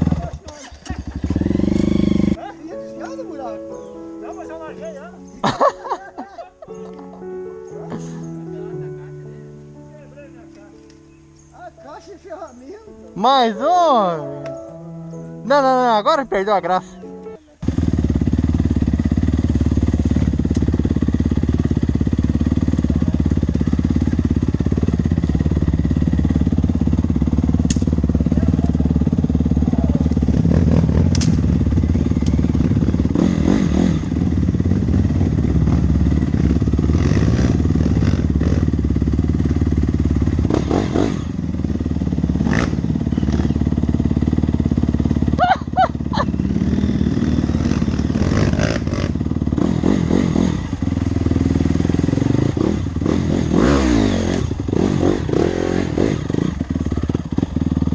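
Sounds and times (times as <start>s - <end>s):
dirt bike engine running: 0.0s - 2.4s, 17.6s - 57.9s.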